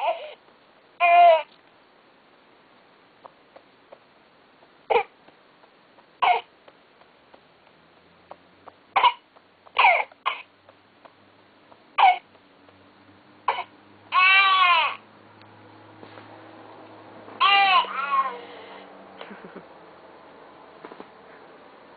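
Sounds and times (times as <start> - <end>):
electronic baby coughs: 6.2 - 6.5, 9.0 - 9.2, 9.8 - 10.5, 12.0 - 12.3, 13.5 - 13.7
electronic baby cry: 14.1 - 15.0, 17.4 - 18.4.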